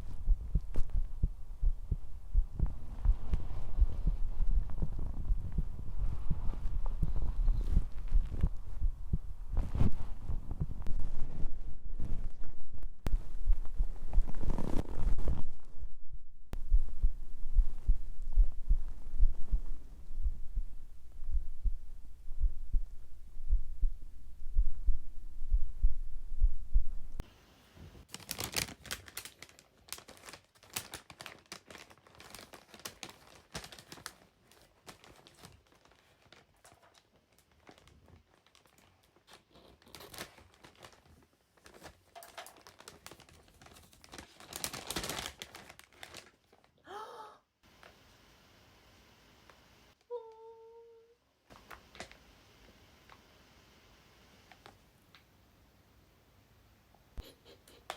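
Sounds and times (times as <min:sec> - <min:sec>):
pulse thumping: 0:00.0 - 0:09.7, 0:16.0 - 0:27.2
handling noise rustling: 0:00.0 - 0:16.0.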